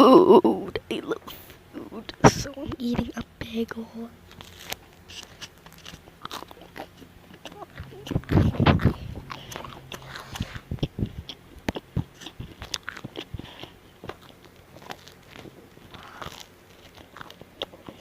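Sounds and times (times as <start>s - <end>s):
person chewing bread: 0.7s - 18.0s.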